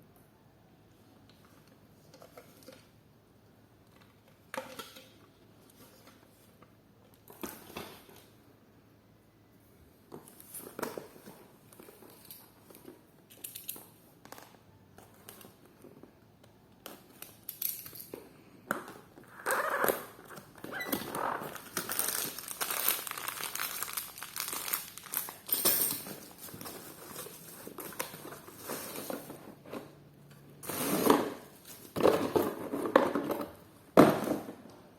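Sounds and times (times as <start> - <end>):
packaging crinkling: 19.3 - 25.5.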